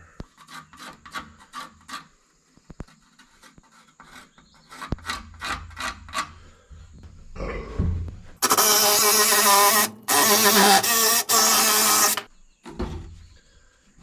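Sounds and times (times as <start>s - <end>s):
hand tool stroking wood: 8.4s - 12.2s.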